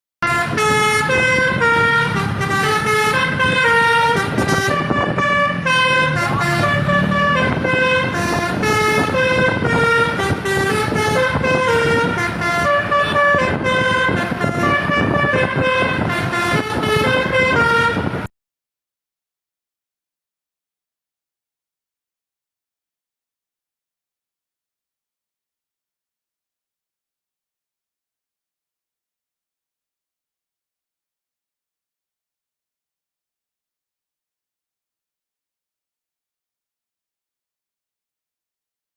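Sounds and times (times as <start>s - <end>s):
bus air horns playing a tune: 0.2s - 18.3s.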